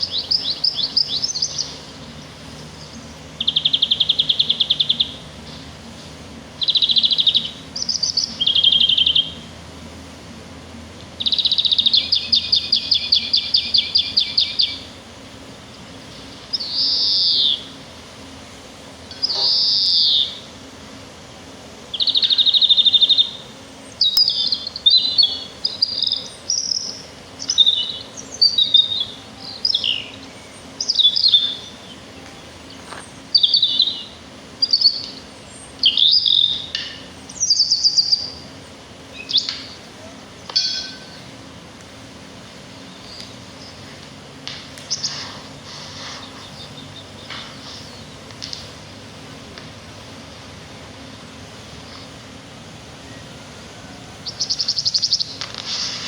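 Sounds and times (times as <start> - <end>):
songbird trills and twittering: 0.0 - 5.8, 6.6 - 9.5, 11.2 - 14.9, 15.7 - 17.8, 19.1 - 20.5, 21.9 - 39.8, 42.8 - 43.9, 44.8 - 48.7, 54.2 - 56.0.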